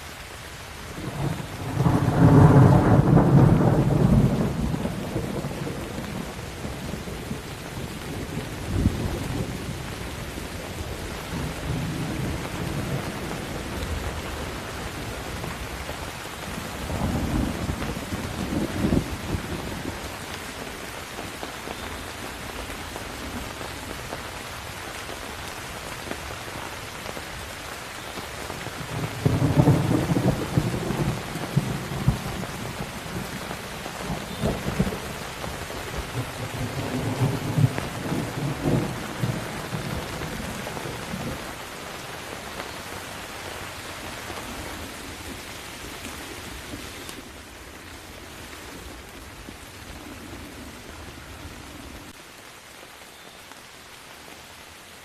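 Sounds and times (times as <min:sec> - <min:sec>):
heavy rain: 0:00.0 - 0:55.0
rolling thunder: 0:01.0 - 0:09.9, 0:16.5 - 0:20.0, 0:28.8 - 0:41.6.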